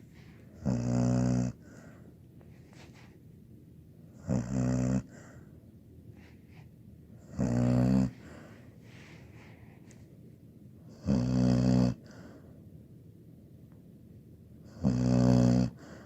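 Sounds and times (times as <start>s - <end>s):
quiet breaths: 0.0s - 3.4s, 4.0s - 12.8s, 14.6s - 16.0s
dog snoring: 0.5s - 2.0s, 4.1s - 5.4s, 7.2s - 8.5s, 10.9s - 12.4s, 14.6s - 16.0s.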